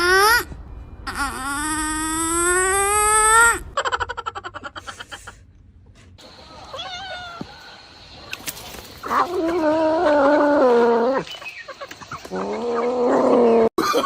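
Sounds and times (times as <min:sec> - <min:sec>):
wavering animal calls: 0:09.0 - 0:13.7.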